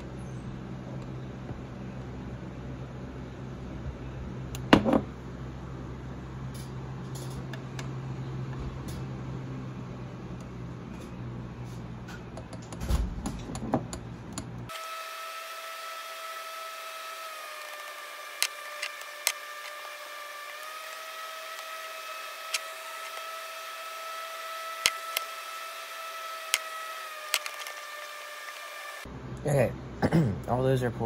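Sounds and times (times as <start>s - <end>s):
machine whine: 14.4s - 29.8s.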